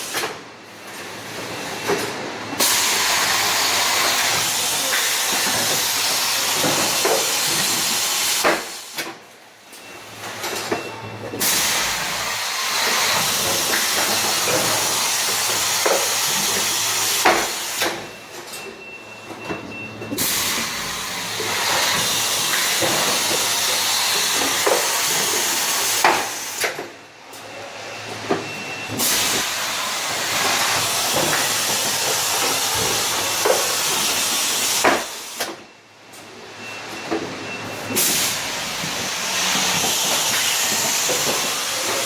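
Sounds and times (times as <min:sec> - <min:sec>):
machine air hiss: 0:02.6 - 0:09.0, 0:11.4 - 0:18.0, 0:20.2 - 0:26.8, 0:29.0 - 0:35.6, 0:37.9 - 0:42.0.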